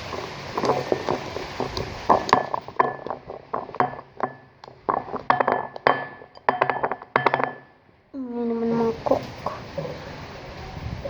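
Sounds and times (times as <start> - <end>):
utensil clinking on dishes: 2.1 - 7.7.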